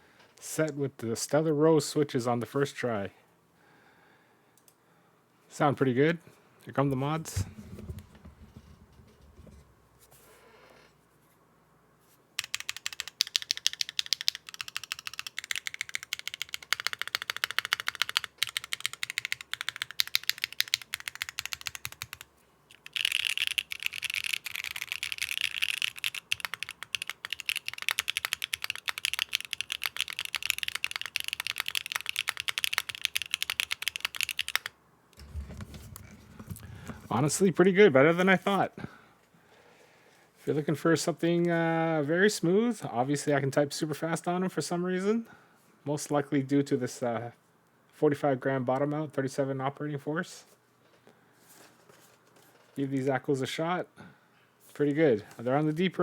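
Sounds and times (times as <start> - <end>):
fast typing on mechanical keyboard: 12.4 - 34.7.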